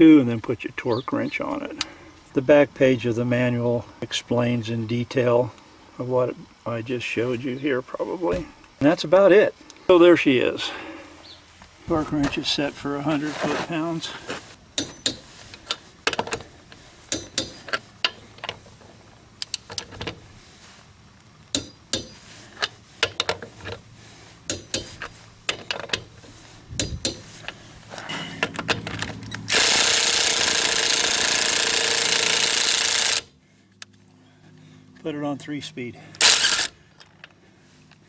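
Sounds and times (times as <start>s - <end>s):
impact wrench hammering: 14.8s - 16.4s, 17.1s - 18.2s, 21.5s - 22.2s, 24.5s - 26.2s, 26.8s - 33.2s
tool clicks and metal knocks: 14.8s - 16.5s, 17.1s - 18.6s, 21.5s - 23.8s, 24.5s - 26.2s, 26.8s - 29.5s.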